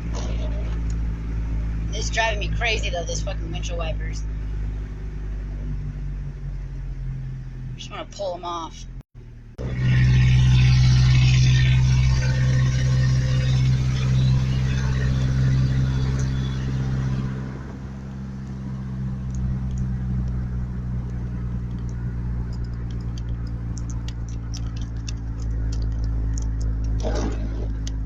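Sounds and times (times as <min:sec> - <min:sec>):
road noise: 0:00.0 - 0:28.0
truck engine hum: 0:00.0 - 0:28.0
light irregular ticking: 0:18.4 - 0:28.0.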